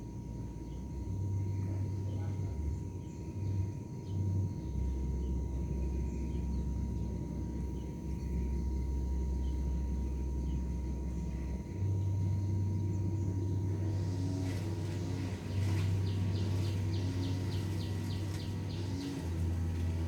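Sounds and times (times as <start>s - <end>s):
steady low rumble: 4.4s - 20.0s.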